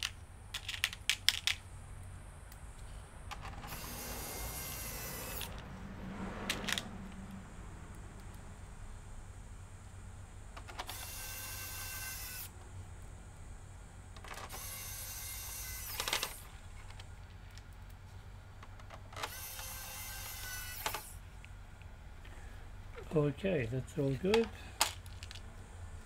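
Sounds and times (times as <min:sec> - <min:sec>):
small electric motor whirring: 0:03.5 - 0:05.7, 0:10.7 - 0:12.6, 0:14.3 - 0:16.9, 0:19.2 - 0:21.2.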